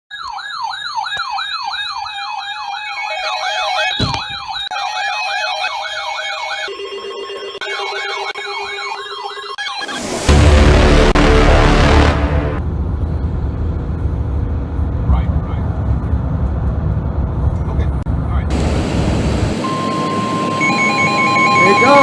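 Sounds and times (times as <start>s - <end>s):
electronic sirens yelping: 0.1s - 12.6s, 19.6s - 22.0s
loud noisy sound: 9.8s - 16.1s, 18.5s - 22.0s.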